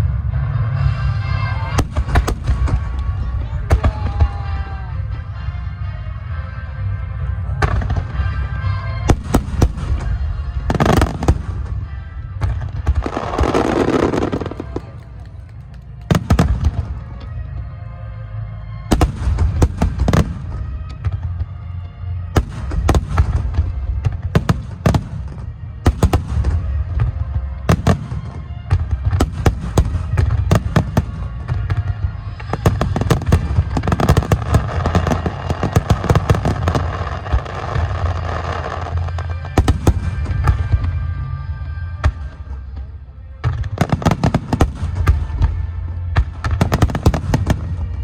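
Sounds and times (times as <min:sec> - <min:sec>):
music through loudspeakers: 0:00.7 - 0:14.6, 0:27.4 - 0:47.8
fireworks bursting with booms: 0:01.7 - 0:04.8, 0:07.6 - 0:15.3, 0:16.0 - 0:17.2, 0:18.9 - 0:21.6, 0:22.3 - 0:42.6, 0:43.4 - 0:48.0.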